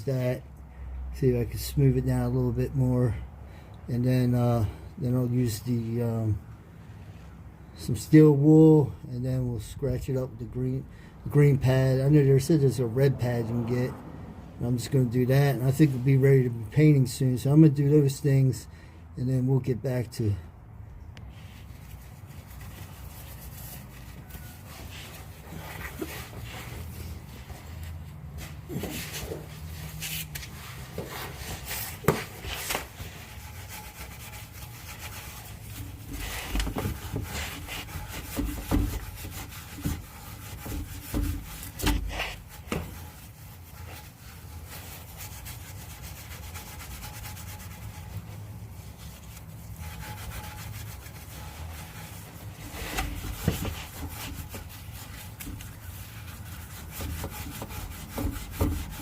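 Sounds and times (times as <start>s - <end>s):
scrubbing metal pipe: 21.3s - 59.0s.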